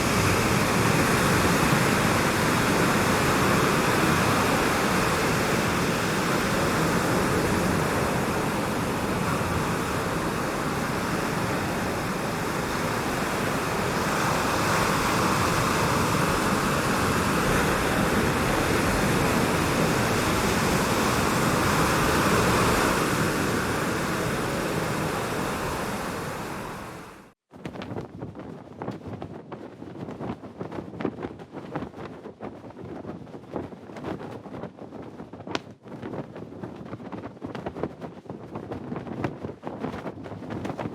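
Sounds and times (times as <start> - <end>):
rushing air hiss: 0.0 - 27.4.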